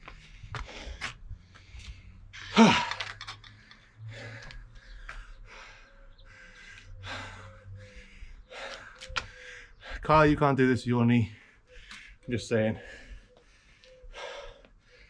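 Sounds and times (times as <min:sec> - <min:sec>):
person panting: 0:00.0 - 0:03.0, 0:03.6 - 0:10.1, 0:11.3 - 0:15.0
person sighing loudly: 0:02.4 - 0:03.2.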